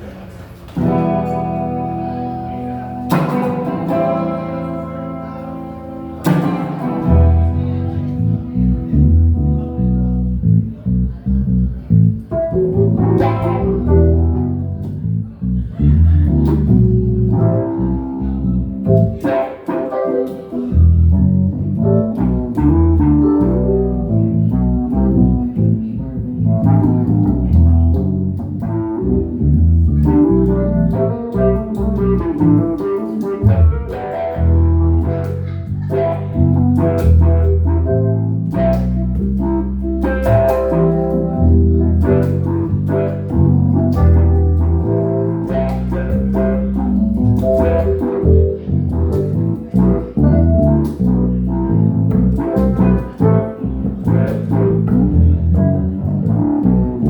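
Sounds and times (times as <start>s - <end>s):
guitar chords ringing: 0.8s - 10.3s
rhythmic bass line: 0.8s - 57.0s.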